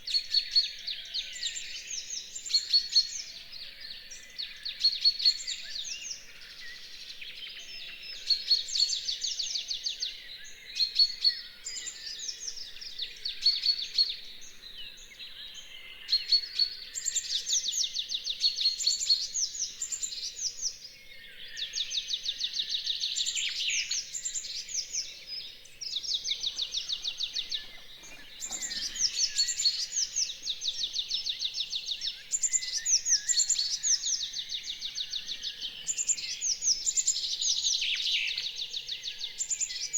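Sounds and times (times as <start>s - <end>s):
songbirds singing: 0.0s - 39.9s.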